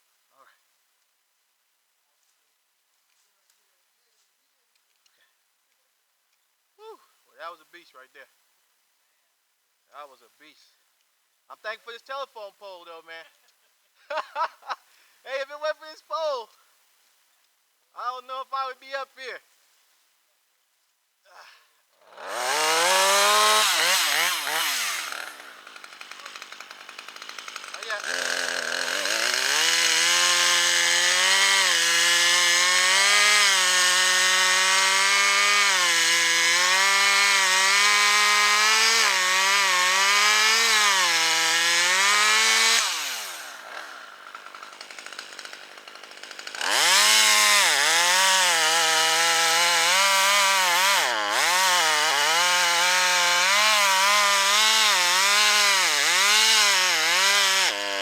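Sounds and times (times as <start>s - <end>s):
chainsaw cutting wood: 22.0s - 58.0s.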